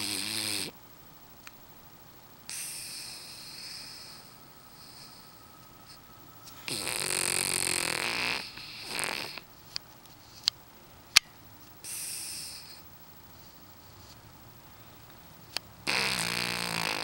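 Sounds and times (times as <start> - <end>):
dog snoring: 0.0 - 0.8, 2.5 - 9.5, 11.8 - 12.9, 15.8 - 17.0.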